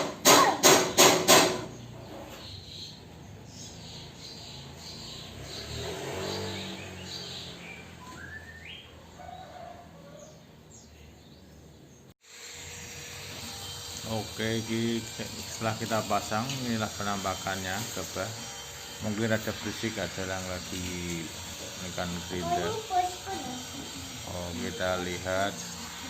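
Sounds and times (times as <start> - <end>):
sharp knock: 0.0 - 1.8
birds chirping faintly: 1.7 - 12.2.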